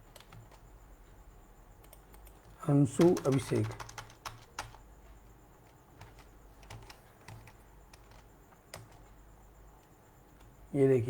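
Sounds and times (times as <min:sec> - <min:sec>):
computer keyboard typing: 0:00.0 - 0:00.7, 0:01.8 - 0:04.9, 0:05.6 - 0:09.2.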